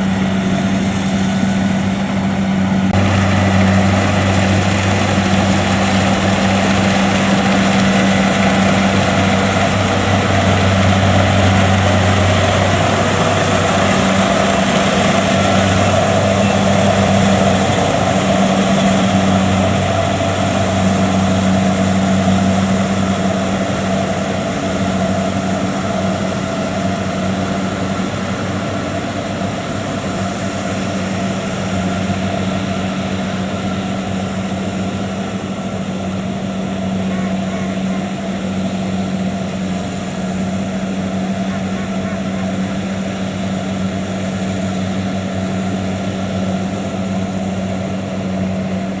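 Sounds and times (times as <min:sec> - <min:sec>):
combine harvester diesel engine: 0:00.0 - 0:49.0.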